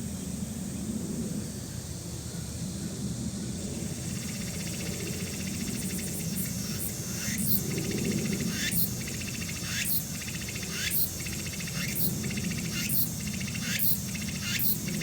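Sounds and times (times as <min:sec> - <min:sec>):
insect trilling: 0:03.8 - 0:15.0.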